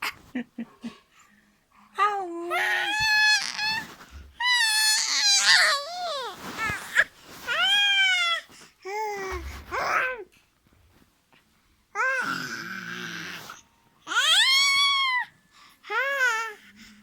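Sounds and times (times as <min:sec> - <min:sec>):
baby squealing cries: 0:04.4 - 0:08.3, 0:14.1 - 0:15.2.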